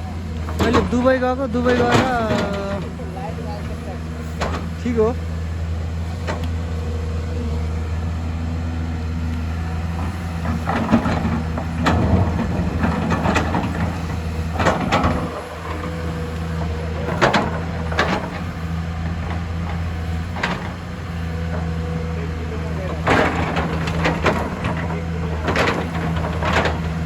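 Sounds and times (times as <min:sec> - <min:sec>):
excavator diesel engine running: 0:00.0 - 0:27.0
sharp knocks and clatters: 0:04.3 - 0:04.9, 0:09.9 - 0:27.0.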